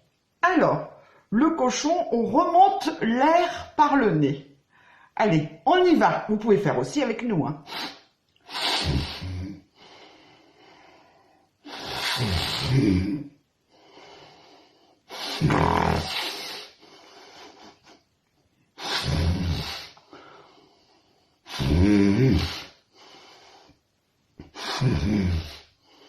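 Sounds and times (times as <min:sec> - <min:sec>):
quiet breathing: 0:00.9 - 0:01.3, 0:04.6 - 0:05.2, 0:07.7 - 0:26.0
person snorting like a pig: 0:08.5 - 0:09.6, 0:11.7 - 0:13.3, 0:15.1 - 0:16.8, 0:18.8 - 0:20.0, 0:21.5 - 0:22.8, 0:24.4 - 0:25.7.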